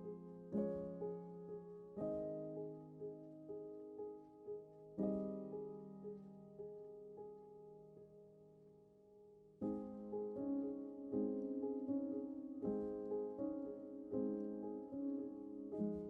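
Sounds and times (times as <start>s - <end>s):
soft piano music: 0.0s - 16.0s.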